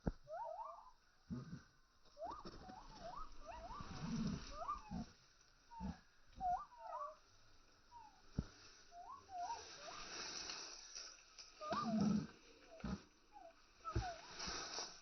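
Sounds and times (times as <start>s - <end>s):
rustling: 2.0s - 6.1s, 7.5s - 15.0s
chickens chirping: 2.2s - 5.1s, 5.7s - 7.2s, 11.6s - 12.0s.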